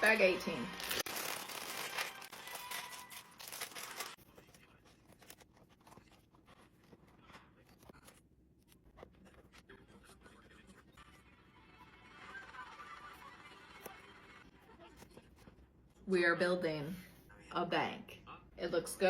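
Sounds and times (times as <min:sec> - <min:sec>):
plastic bag crinkling and tearing: 0:00.0 - 0:07.0.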